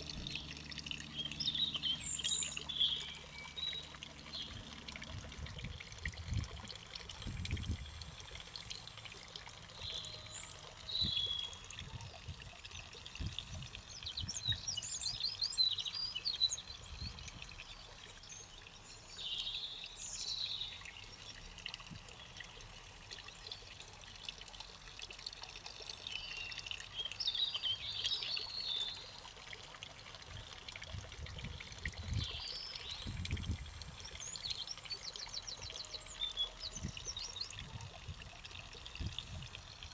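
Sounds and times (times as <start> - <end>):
birds singing: 0.0 - 5.2, 9.7 - 12.2, 12.8 - 21.4, 25.9 - 29.2, 31.8 - 38.1.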